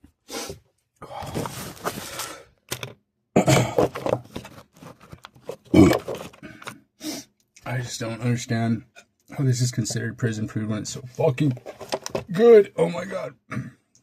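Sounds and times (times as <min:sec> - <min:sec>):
low voiced grunts: 0:05.7 - 0:06.1.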